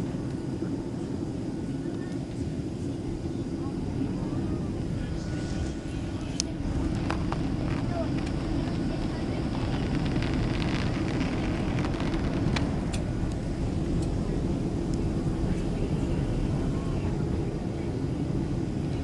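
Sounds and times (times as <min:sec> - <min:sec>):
aircraft cabin engine rumble: 0:00.0 - 0:19.0
faint ticks and rattles: 0:06.2 - 0:14.2.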